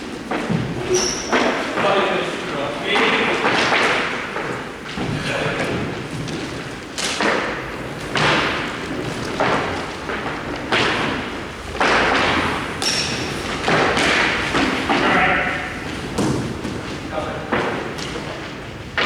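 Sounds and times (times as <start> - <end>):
hockey shots thudding: 5.8 - 19.0.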